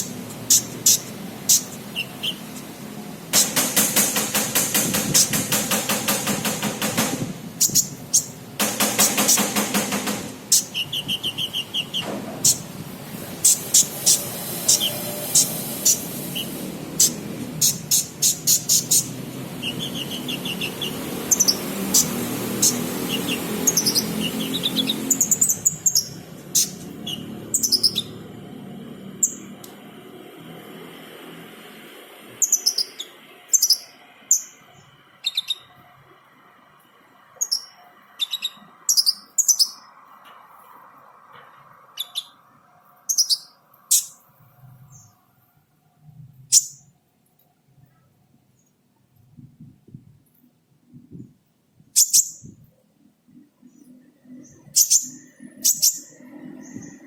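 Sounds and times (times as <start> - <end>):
sunbird chirping: 0.0 - 2.8, 7.6 - 8.4, 10.5 - 12.7, 13.3 - 28.3, 32.4 - 35.8, 37.4 - 40.0, 43.1 - 44.2, 46.5 - 46.9, 52.0 - 52.5, 53.6 - 57.0
steady hiss: 12.4 - 19.2.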